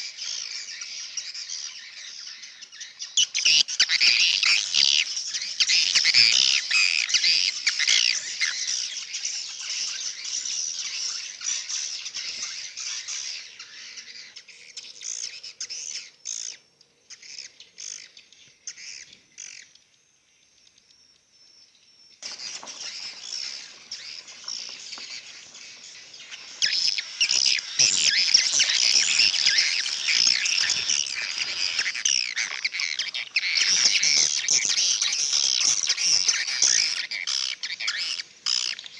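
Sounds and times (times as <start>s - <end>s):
swiftlets chirping and twittering: 0.0s - 18.1s, 22.2s - 38.9s
swiftlets twittering: 26.3s - 36.0s.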